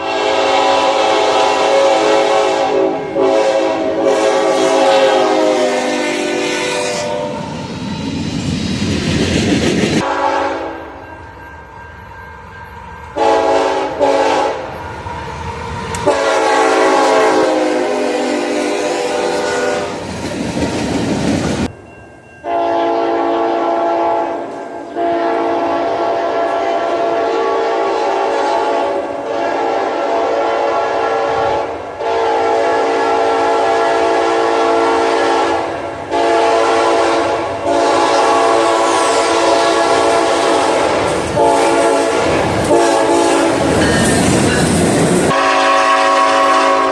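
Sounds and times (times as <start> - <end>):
locomotive air horn blasts: 0.0 - 7.5, 10.0 - 11.0, 13.2 - 14.8, 16.0 - 20.0, 22.4 - 43.9, 45.3 - 46.9
train rumbling on rails: 0.0 - 46.9.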